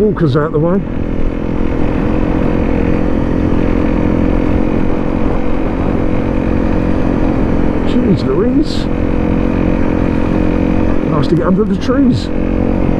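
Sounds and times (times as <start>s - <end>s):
motorcycle engine running: 0.0s - 12.9s.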